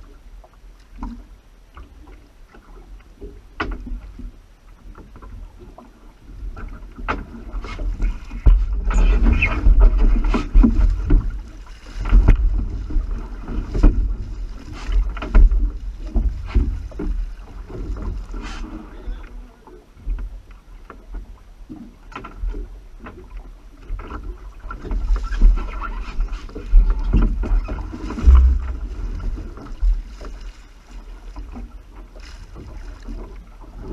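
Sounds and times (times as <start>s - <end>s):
boat heavy low rumble: 0.0s - 33.9s
water splashes: 0.0s - 33.9s
wind on microphone: 7.3s - 19.3s, 24.3s - 30.4s
irregular knocks: 28.1s - 29.2s.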